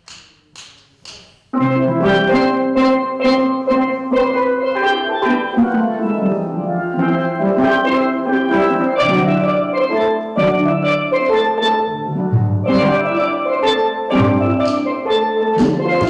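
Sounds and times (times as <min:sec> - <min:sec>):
steel drum band playing: 0:07.8 - 0:16.0.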